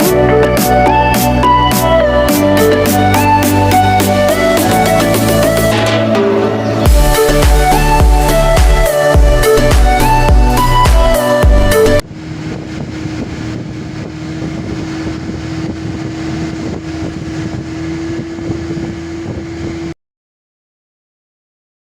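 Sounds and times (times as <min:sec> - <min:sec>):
music: 0:00.0 - 0:12.0
motorboat engine running: 0:00.0 - 0:20.0
wind buffeting microphone: 0:12.0 - 0:20.0.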